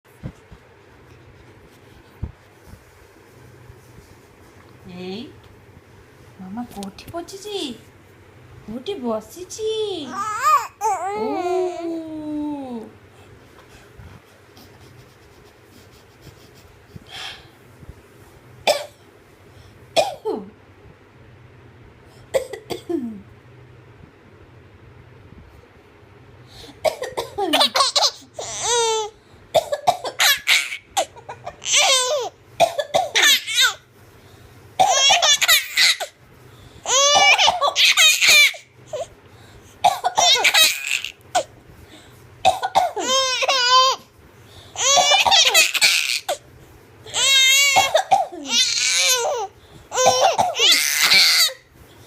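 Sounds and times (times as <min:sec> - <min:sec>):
woman coughing: 0:18.7 - 0:19.0, 0:20.0 - 0:20.4, 0:22.3 - 0:23.2, 0:26.8 - 0:27.8, 0:29.6 - 0:30.4, 0:32.6 - 0:33.3, 0:39.8 - 0:40.6, 0:42.5 - 0:43.1, 0:47.8 - 0:48.5, 0:50.0 - 0:51.4
baby laughing: 0:27.5 - 0:29.1, 0:30.1 - 0:32.3, 0:33.0 - 0:33.8, 0:34.8 - 0:36.1, 0:36.9 - 0:39.1, 0:40.0 - 0:41.5, 0:42.9 - 0:44.0, 0:44.8 - 0:46.4, 0:47.2 - 0:51.6.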